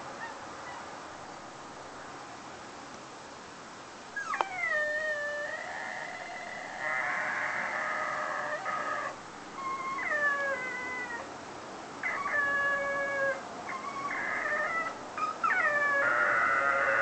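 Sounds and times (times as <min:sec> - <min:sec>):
dog howling and whining: 0:04.2 - 0:11.3, 0:12.0 - 0:17.0.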